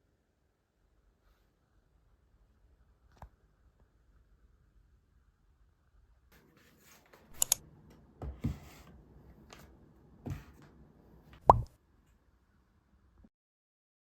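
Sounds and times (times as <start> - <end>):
container clicking: 7.4 - 7.6
hollow plop: 11.4 - 11.7.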